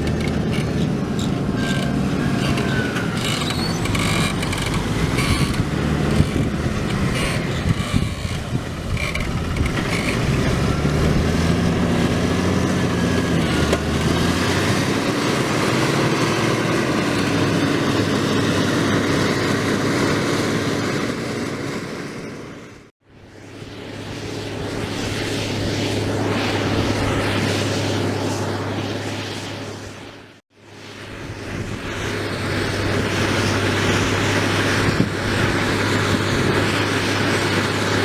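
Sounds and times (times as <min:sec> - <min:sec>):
tractor diesel engine under load: 0:00.0 - 0:22.9, 0:32.1 - 0:38.0.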